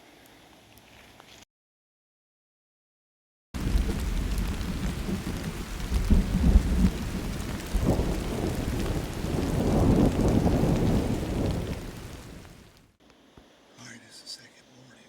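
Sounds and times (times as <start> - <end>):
thunder rumbling: 3.6 - 12.8
steady rain: 3.6 - 15.0.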